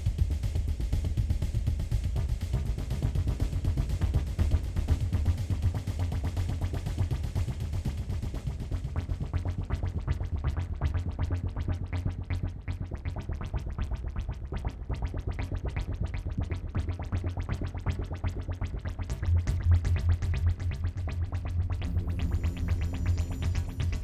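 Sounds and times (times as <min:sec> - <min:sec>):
low steady electronic hum: 0:21.8 - 0:24.0.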